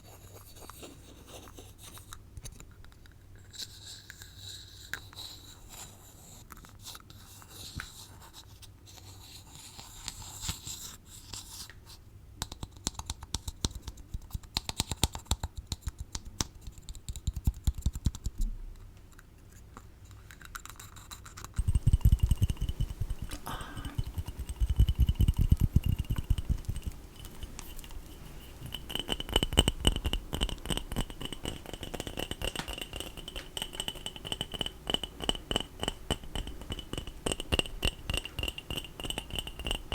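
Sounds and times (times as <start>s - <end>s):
soft scratching: 20.6s - 39.9s
quick taps on small objects: 21.6s - 39.9s.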